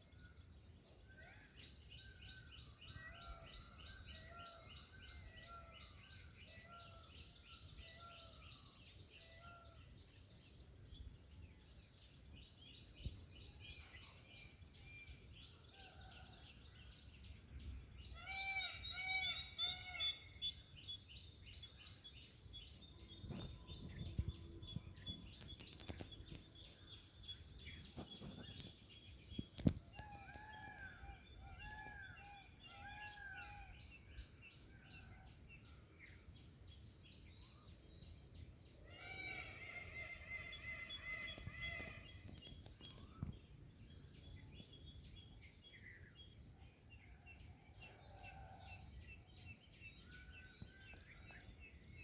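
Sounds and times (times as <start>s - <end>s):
insects chirping: 0.0s - 52.0s
peafowl calling: 18.2s - 20.4s, 38.9s - 42.2s.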